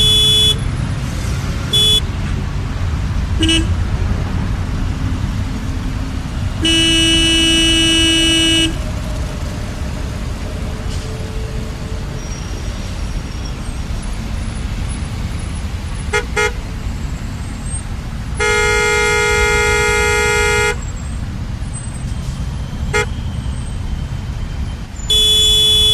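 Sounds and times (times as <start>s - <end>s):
car horns: 0.0s - 0.9s, 1.6s - 2.4s, 3.4s - 3.8s, 6.6s - 8.9s, 16.0s - 16.8s, 18.4s - 21.0s, 22.8s - 23.4s, 25.0s - 25.9s
idling traffic rumble: 0.0s - 25.9s.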